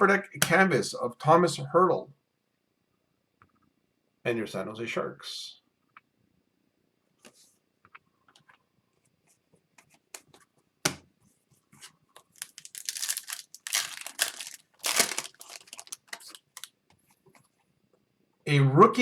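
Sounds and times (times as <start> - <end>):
foil wrapper tearing and crinkling: 12.2 - 16.7.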